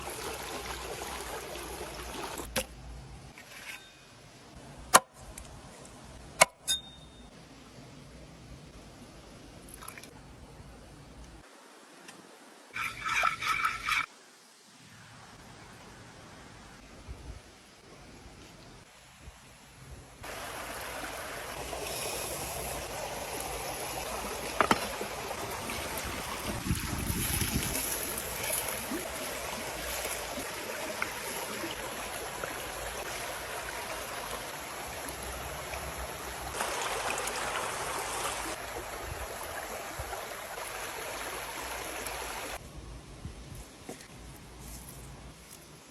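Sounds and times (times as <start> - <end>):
rushing water-like noise: 0.0 - 2.5, 18.8 - 42.6
high ringing tone: 6.7 - 7.3.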